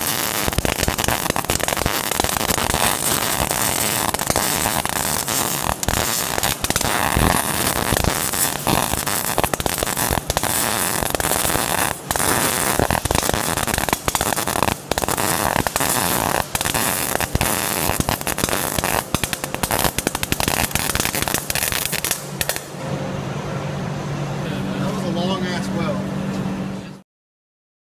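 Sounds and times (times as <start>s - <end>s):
welding arc crackling: 0.0s - 22.8s
low hum: 21.4s - 27.0s.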